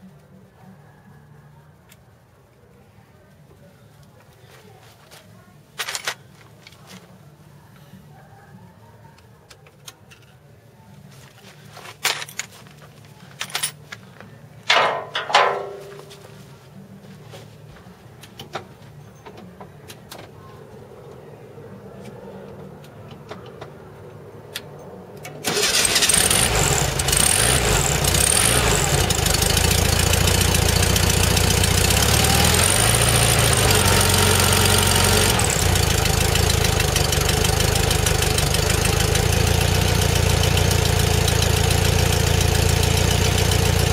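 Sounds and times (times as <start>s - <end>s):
car engine starting and running: 23.0s - 43.9s.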